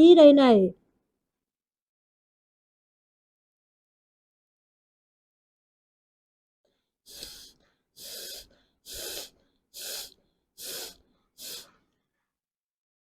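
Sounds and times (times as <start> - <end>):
sharp breaths out through nose: 7.1 - 12.0.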